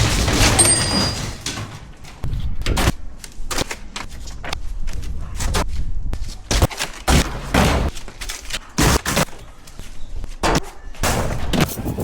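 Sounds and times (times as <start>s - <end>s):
sharp knocks and bangs: 0.0s - 3.0s, 6.5s - 8.0s.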